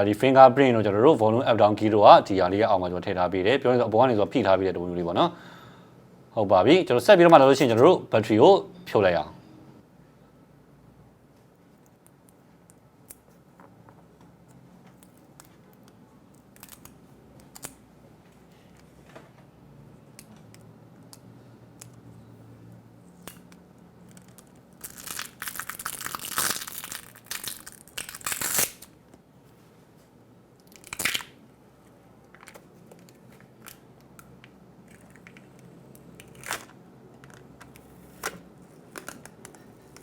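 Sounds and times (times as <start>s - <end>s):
battery adhesive crackling and tearing: 23.2s - 28.9s.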